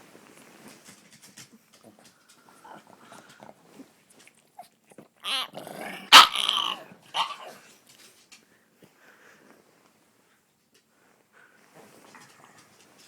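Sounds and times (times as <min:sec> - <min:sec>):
dog making vocal noises: 0:04.6 - 0:07.6.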